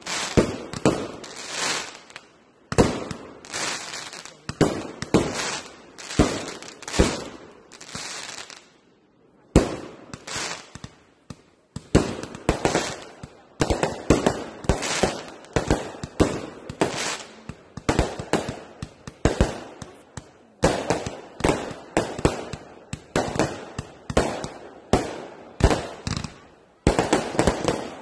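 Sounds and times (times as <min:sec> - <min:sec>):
fireworks banging: 0:00.0 - 0:08.6, 0:09.5 - 0:28.0
fireworks crackling: 0:00.0 - 0:08.8, 0:09.5 - 0:28.0.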